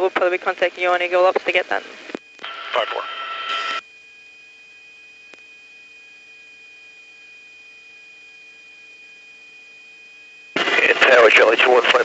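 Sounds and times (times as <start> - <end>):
electrical hum with tones: 0.0 - 12.0.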